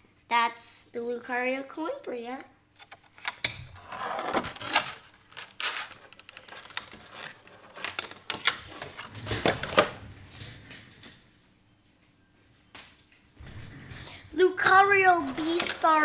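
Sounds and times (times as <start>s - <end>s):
packaging clicks and rustling: 2.8s - 10.2s, 15.2s - 16.0s.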